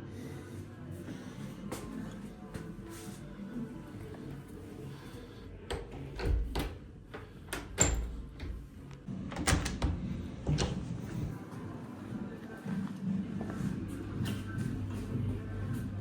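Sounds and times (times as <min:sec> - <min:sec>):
door clunks and knocks: 0:05.7 - 0:11.3.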